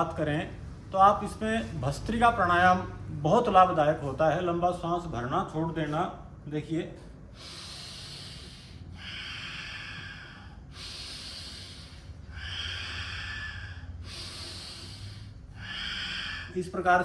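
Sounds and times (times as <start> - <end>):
deep breaths through the nose: 7.1 - 16.6.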